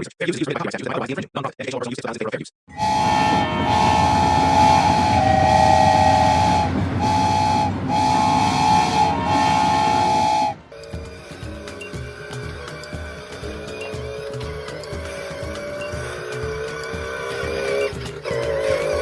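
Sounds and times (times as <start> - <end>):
loud whistle-like tone: 2.7 - 11.9
rumbling noise: 2.7 - 19.0.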